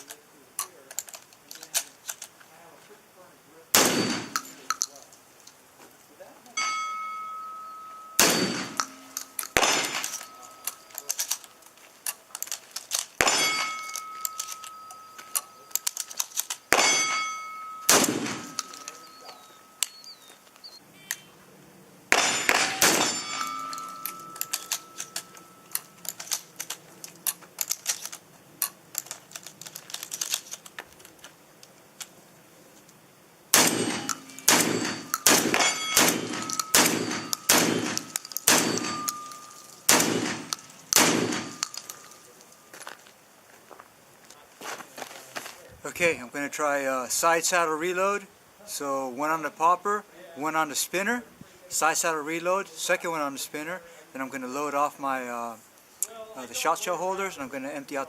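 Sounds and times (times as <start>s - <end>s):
shotgun shots: 3.7s - 4.7s, 8.2s - 10.5s, 13.2s - 14.0s, 16.7s - 19.7s, 22.1s - 25.2s, 33.5s - 42.1s
distant gunfire cracks: 3.8s - 4.7s, 8.2s - 10.4s, 17.8s - 18.8s, 22.1s - 24.2s, 33.5s - 41.9s
steel plate ringing: 3.8s - 5.0s, 6.6s - 11.6s, 13.2s - 20.4s, 22.1s - 26.2s, 33.6s - 42.7s.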